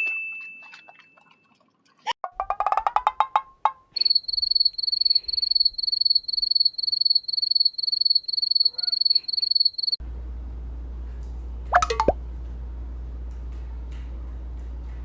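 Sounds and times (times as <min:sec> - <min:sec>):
high-pitched chirping: 0:04.0 - 0:10.0.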